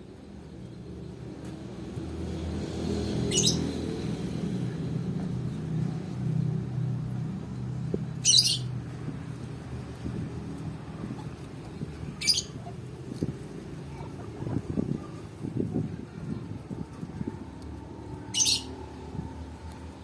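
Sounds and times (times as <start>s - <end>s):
low engine-like hum: 0.0s - 20.0s
harsh high squawks: 18.2s - 18.8s.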